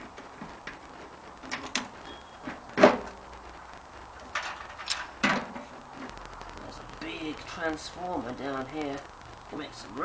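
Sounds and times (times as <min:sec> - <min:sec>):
metal parts knocking and clunking: 0:04.2 - 0:05.7.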